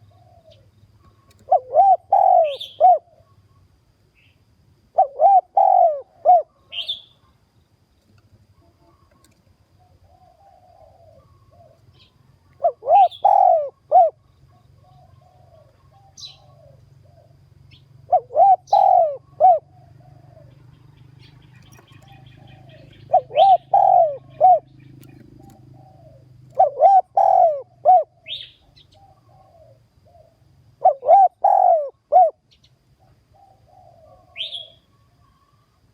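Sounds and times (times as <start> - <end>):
dove cooing: 0.0 - 3.4, 4.9 - 7.2, 8.6 - 32.4, 33.0 - 35.7
high bird chirps: 20.4 - 27.6.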